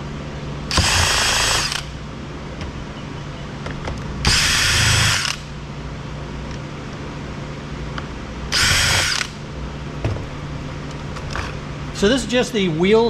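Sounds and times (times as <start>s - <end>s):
power driver whirring: 0.7s - 2.0s, 4.2s - 5.5s, 8.5s - 9.4s.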